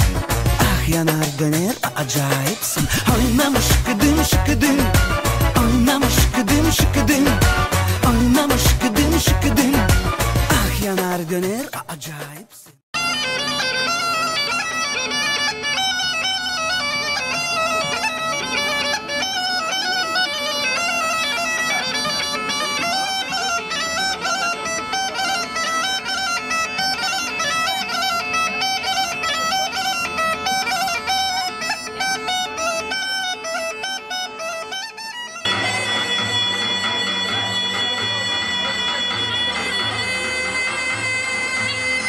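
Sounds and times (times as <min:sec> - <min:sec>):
bagpipe melody over drone: 0:04.8 - 0:05.9, 0:13.0 - 0:42.0.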